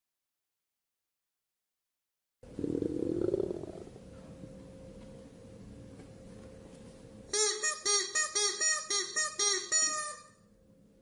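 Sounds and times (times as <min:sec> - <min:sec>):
animal's low pulsing rumble: 0:02.5 - 0:04.6.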